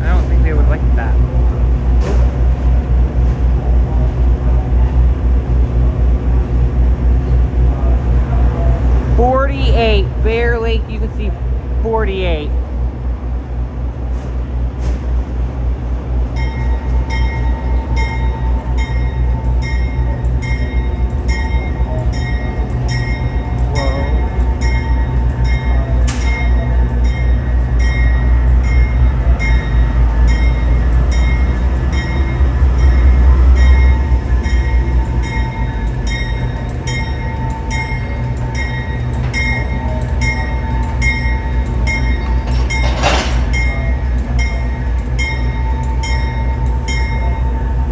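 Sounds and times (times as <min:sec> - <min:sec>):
locomotive bell ringing: 0:00.0 - 0:12.8, 0:16.3 - 0:47.9
diesel locomotive engine rumbling: 0:00.0 - 0:47.9.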